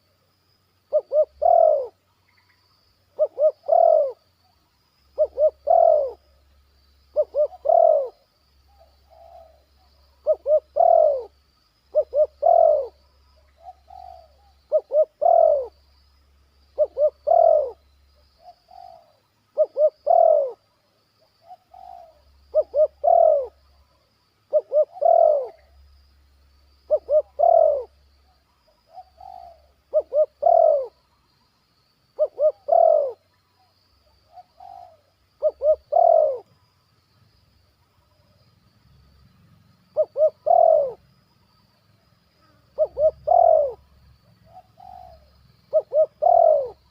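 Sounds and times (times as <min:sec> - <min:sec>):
dove cooing: 0:00.9 - 0:02.0, 0:03.2 - 0:04.2, 0:05.2 - 0:06.4, 0:07.1 - 0:15.8, 0:16.8 - 0:17.8, 0:18.4 - 0:20.7, 0:21.4 - 0:23.9, 0:24.5 - 0:25.8, 0:26.9 - 0:31.0, 0:32.2 - 0:33.3, 0:34.2 - 0:36.5, 0:39.9 - 0:41.0, 0:42.5 - 0:46.9.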